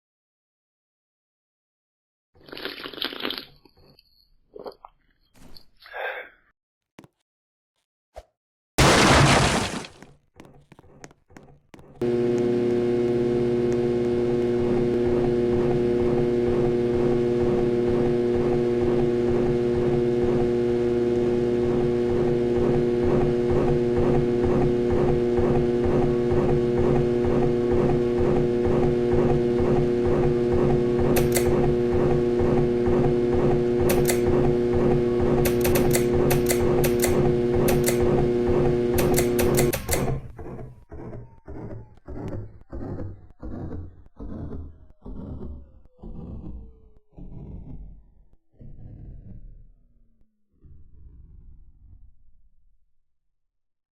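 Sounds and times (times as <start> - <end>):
ceiling fan motor humming: 12.0 - 42.9
sharp ticks: 35.4 - 38.0.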